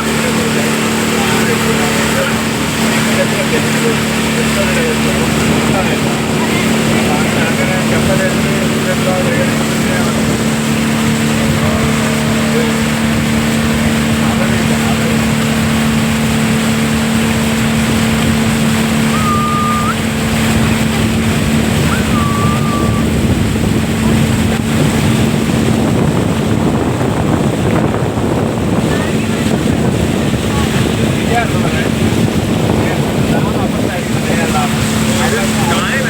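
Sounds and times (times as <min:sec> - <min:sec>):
motorboat engine humming: 0:00.0 - 0:36.0
water noise: 0:00.0 - 0:36.0
wind noise: 0:00.0 - 0:36.0
short whistles: 0:19.1 - 0:20.1, 0:21.9 - 0:23.1.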